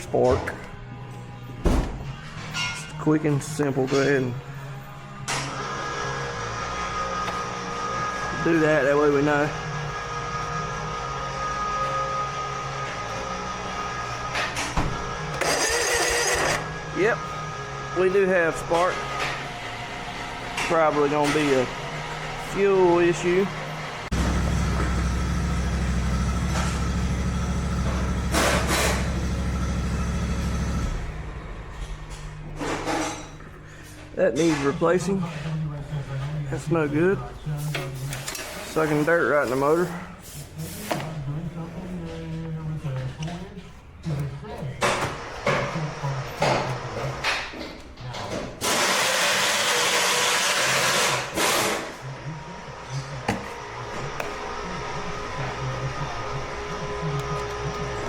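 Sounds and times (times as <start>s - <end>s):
starter cranking engine: 15.4s - 16.7s.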